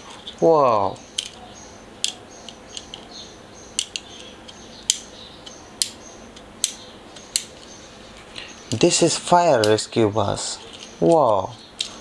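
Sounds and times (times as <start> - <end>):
plastic toy clicking: 1.2 - 1.4, 3.8 - 7.5.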